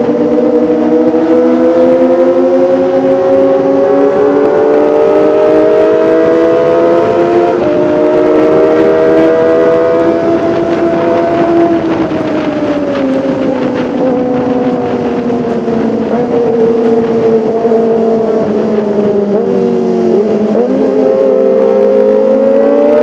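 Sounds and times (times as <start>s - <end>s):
motorcycle engine revving high: 0.0s - 23.0s.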